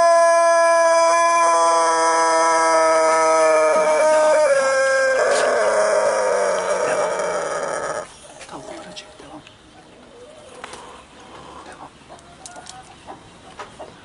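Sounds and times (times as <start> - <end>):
rooster crowing: 0.0 - 8.1.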